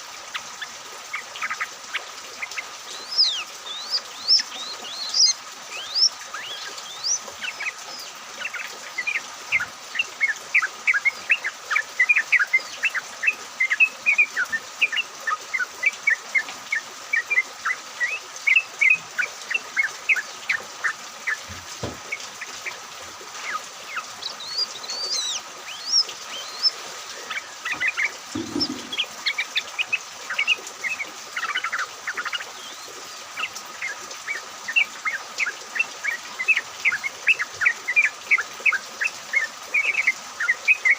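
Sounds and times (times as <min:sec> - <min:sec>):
flock of birds chirping: 0:00.0 - 0:40.9.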